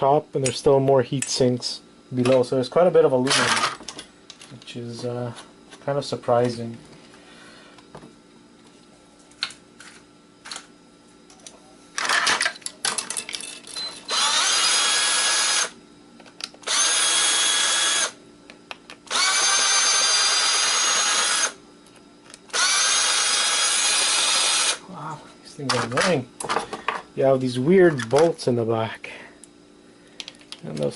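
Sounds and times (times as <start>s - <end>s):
power drill whining: 13.7s - 15.8s, 16.6s - 18.2s, 19.1s - 21.6s, 22.5s - 24.8s.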